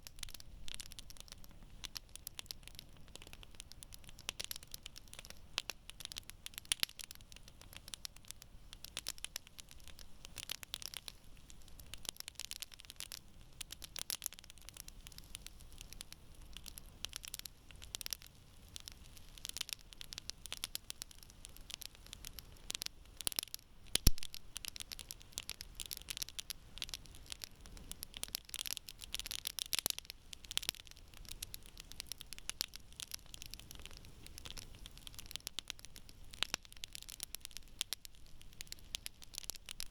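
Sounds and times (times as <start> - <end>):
campfire crackling: 0.0 - 39.9
loud sharp pop: 24.0 - 24.5.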